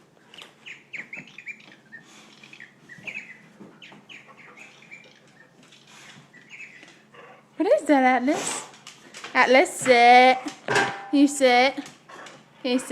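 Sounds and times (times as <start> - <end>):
bird chirping: 0.2 - 7.1.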